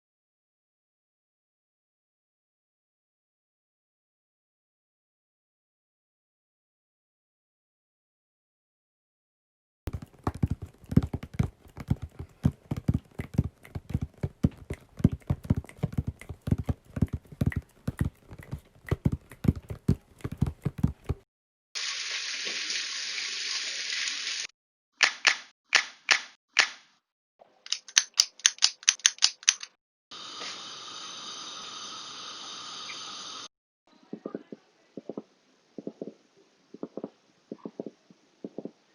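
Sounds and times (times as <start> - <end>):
oil sizzling: 21.8 - 24.5.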